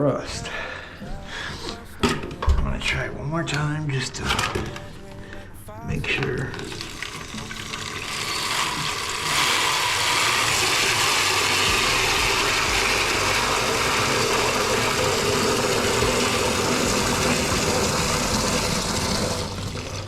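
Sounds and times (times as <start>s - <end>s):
running water rushing: 6.7s - 20.0s.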